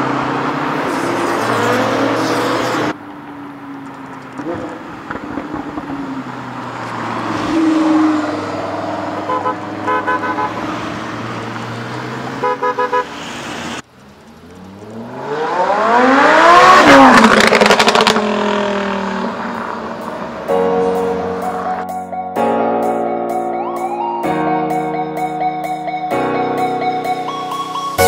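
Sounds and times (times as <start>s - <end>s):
car horn short beeps: 9.2s - 10.6s, 12.4s - 13.1s
sports car engine revving: 14.2s - 21.8s.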